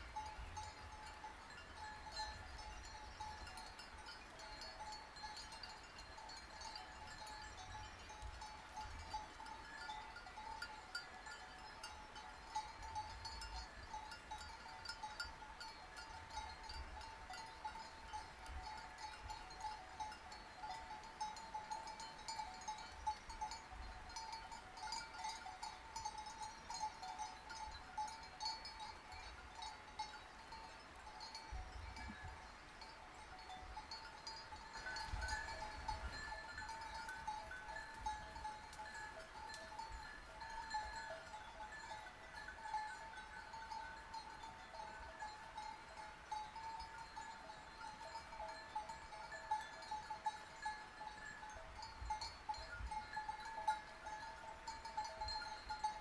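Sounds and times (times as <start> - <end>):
sheep bells clinking: 0.0 - 56.0.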